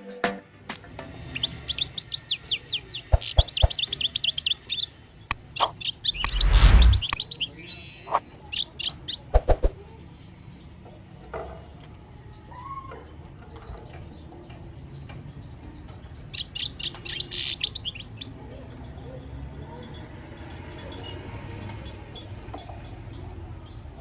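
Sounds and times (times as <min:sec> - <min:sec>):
bird twittering song: 0:01.2 - 0:10.7, 0:13.7 - 0:18.4
sharp clicks: 0:05.3 - 0:08.2.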